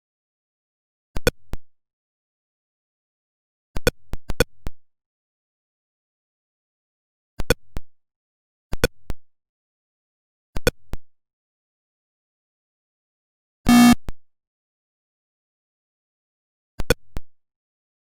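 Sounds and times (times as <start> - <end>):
short electronic beeps: 13.7 - 14.0.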